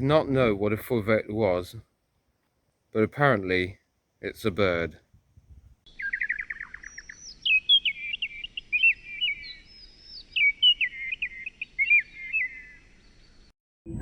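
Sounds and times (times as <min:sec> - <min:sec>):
songbird singing: 0:05.8 - 0:13.5.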